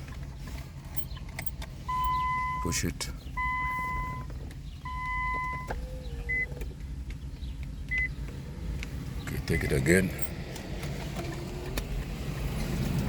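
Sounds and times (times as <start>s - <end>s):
electronic beeps: 1.9s - 2.7s, 3.4s - 6.5s.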